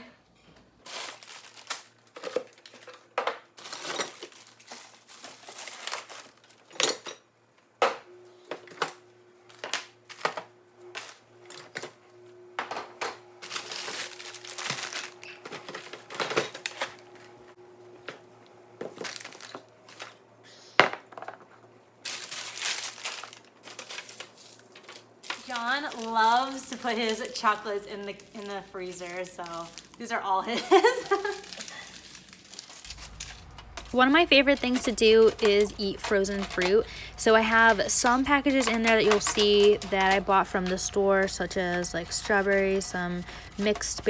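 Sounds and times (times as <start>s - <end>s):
frozen food bags crinkling: 0.8s - 6.9s, 13.3s - 17.3s, 18.8s - 20.2s, 22.0s - 44.0s
containers knocking and clattering: 32.9s - 44.0s.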